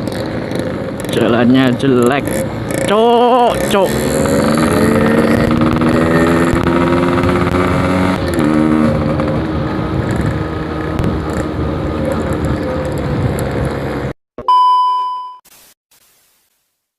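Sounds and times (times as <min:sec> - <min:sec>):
two-stroke motorcycle revving: 0:00.0 - 0:14.2
short electronic beep: 0:14.4 - 0:15.4.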